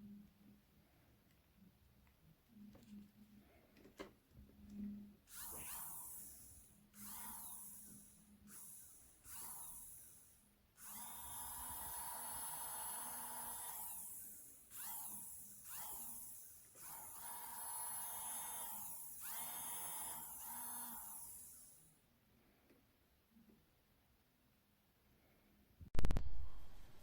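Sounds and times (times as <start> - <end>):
electric nail drill whining: 5.3 - 22.0.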